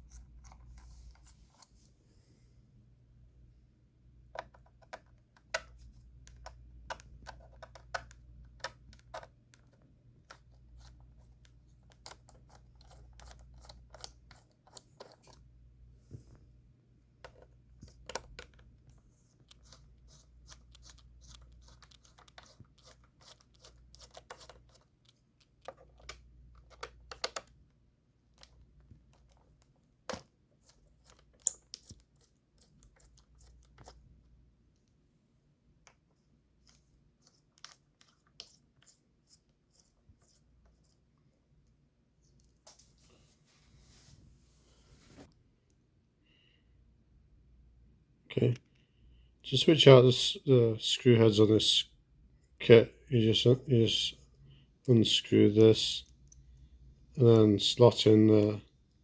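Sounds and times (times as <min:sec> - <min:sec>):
faint low hum: 0:00.0 - 0:59.0
screwdriver clicks and scratches: 0:19.4 - 0:27.6.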